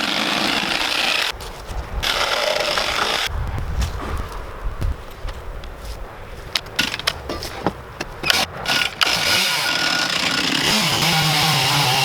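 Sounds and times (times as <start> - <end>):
chainsaw running: 0.0 - 1.3, 2.0 - 3.3, 8.3 - 12.0.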